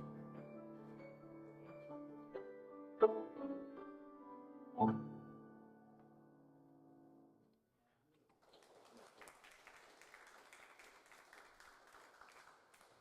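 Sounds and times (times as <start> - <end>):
piano music: 0.0 - 7.3
faint applause: 8.1 - 13.0.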